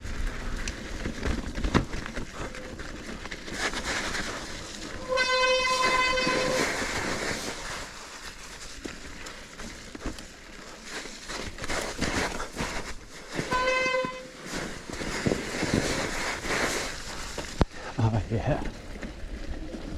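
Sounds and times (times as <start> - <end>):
bike rattling over rough trail: 0.0 - 19.9
high-pitched squeals: 4.8 - 7.0, 13.5 - 14.3.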